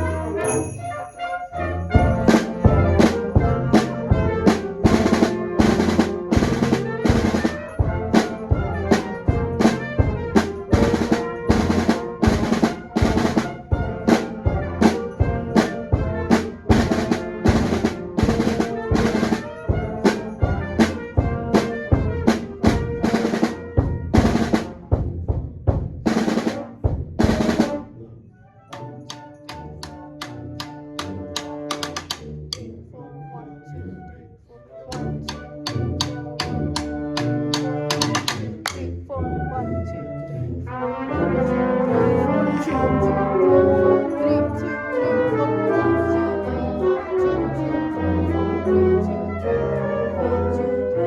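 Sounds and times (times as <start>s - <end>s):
sleigh bells: 0.0s - 3.6s, 7.1s - 9.2s
concert band playing: 2.0s - 23.6s
drums beating: 2.0s - 27.9s, 29.8s - 32.2s, 34.9s - 38.8s.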